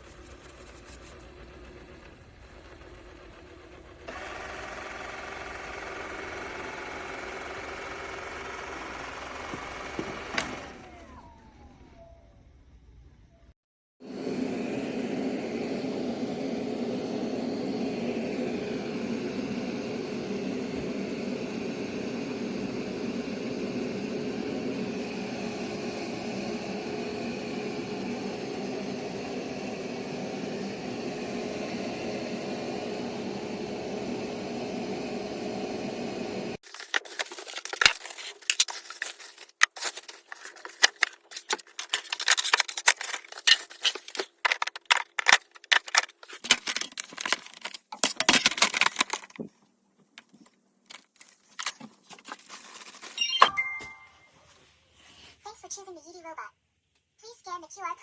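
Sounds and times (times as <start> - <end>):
robot vacuum motor hum: 0.0 - 12.5, 14.0 - 36.6.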